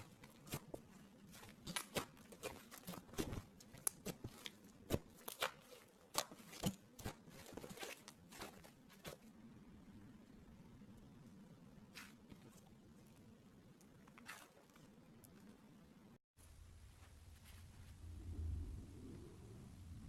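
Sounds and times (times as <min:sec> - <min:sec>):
slime clay crackling: 0:00.0 - 0:09.2.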